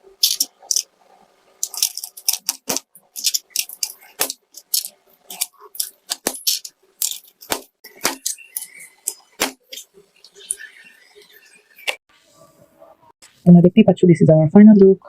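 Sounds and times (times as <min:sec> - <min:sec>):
plastic keyboard keys clicking: 0:00.2 - 0:00.9, 0:01.6 - 0:08.4.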